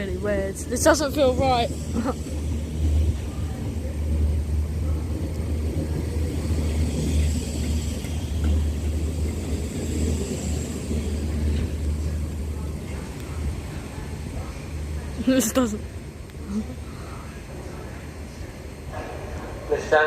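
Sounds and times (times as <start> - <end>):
electric train rumbling past: 0.0 - 20.0.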